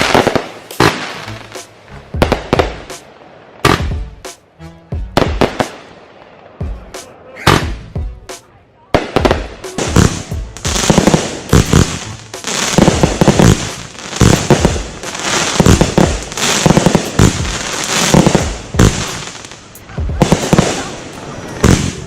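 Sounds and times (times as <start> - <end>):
fireworks banging: 0.0 - 5.9, 6.6 - 8.2, 8.9 - 22.0
fireworks hissing: 9.6 - 22.0.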